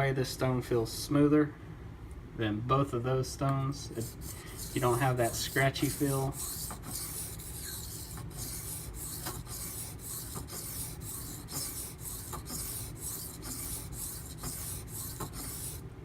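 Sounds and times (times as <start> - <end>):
knife rasping on whetstone: 4.0 - 15.8.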